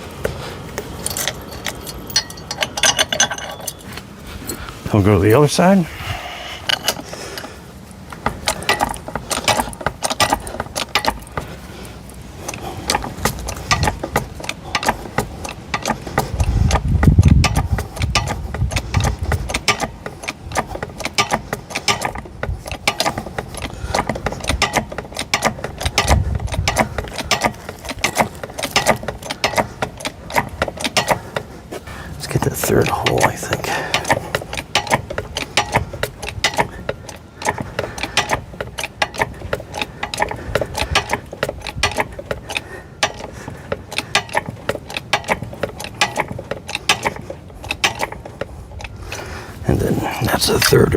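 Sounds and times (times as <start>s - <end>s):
metal clicking of car ramp jack: 1.0s - 3.9s, 8.1s - 11.6s, 12.4s - 31.5s, 33.1s - 49.2s.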